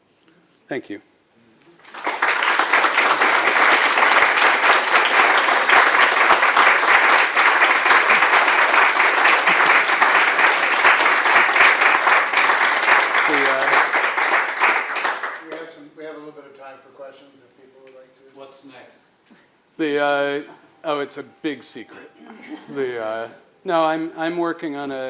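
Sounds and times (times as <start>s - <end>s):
audience applauding: 1.8s - 15.7s.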